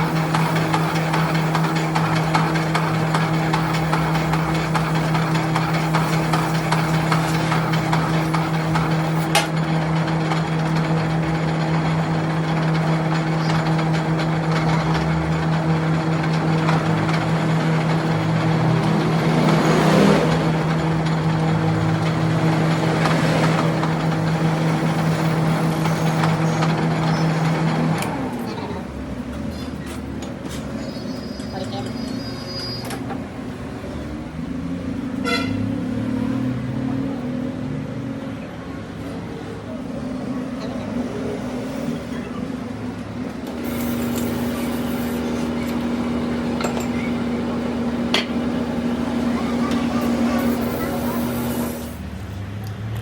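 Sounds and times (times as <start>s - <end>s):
machine running with low hum: 0.0s - 29.7s, 42.9s - 52.1s
hiss: 43.6s - 45.7s.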